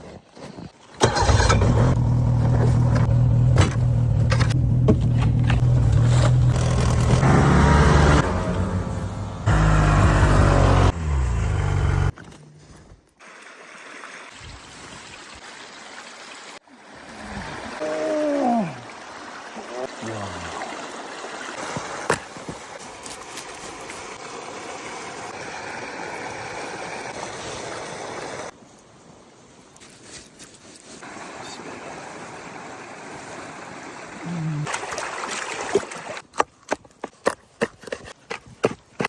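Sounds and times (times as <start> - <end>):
engine droning loudly: 6.5 - 12.1.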